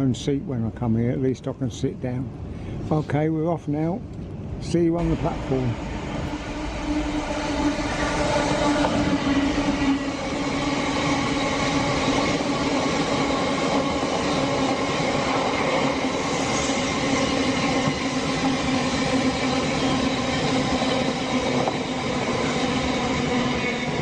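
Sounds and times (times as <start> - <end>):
train electric hum: 2.1 - 24.0
train wheels rolling: 5.0 - 24.0.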